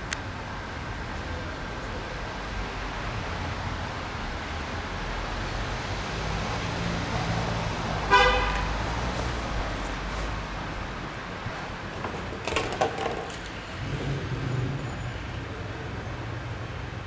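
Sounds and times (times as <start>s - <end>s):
passing vehicle rumble: 1.4s - 17.0s
vehicle horn toot: 8.1s - 8.9s.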